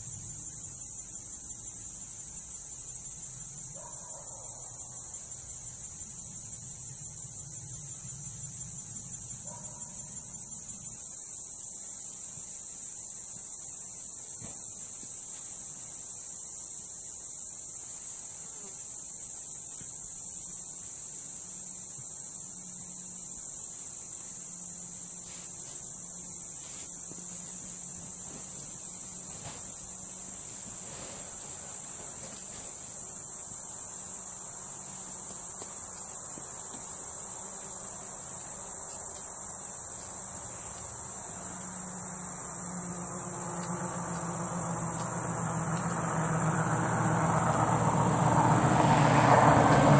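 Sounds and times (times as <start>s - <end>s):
crickets trilling: 0.0s - 49.9s
vehicle engine: 41.3s - 49.9s.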